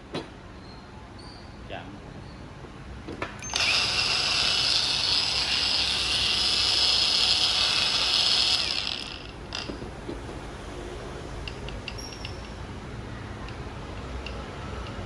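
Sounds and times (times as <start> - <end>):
power tool motor whine: 3.4 - 9.8.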